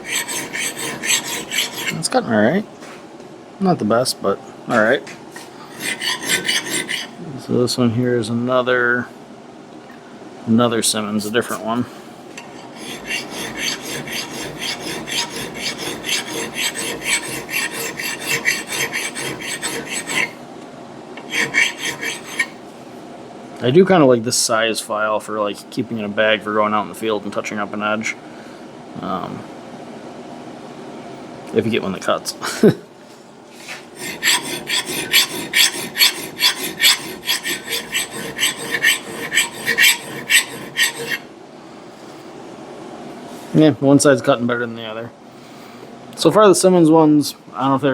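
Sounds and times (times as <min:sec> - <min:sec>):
file rasping on steel axe edge: 0:00.0 - 0:02.1, 0:05.7 - 0:07.2, 0:12.4 - 0:20.4, 0:21.2 - 0:22.6, 0:33.7 - 0:41.3.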